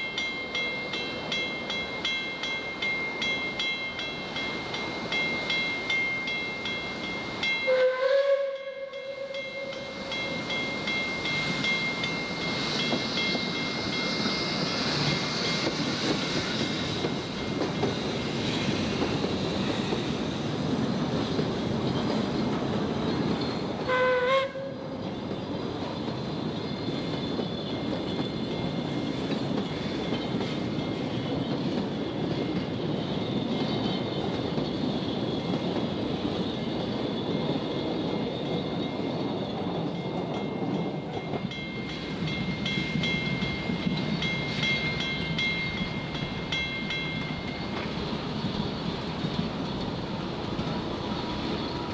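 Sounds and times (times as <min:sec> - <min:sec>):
crossing bell ringing: 0:00.0 - 0:15.8, 0:32.5 - 0:47.9
train wheels clattering on rails: 0:00.0 - 0:51.9
steam train whistle: 0:07.7 - 0:09.9, 0:23.8 - 0:25.0.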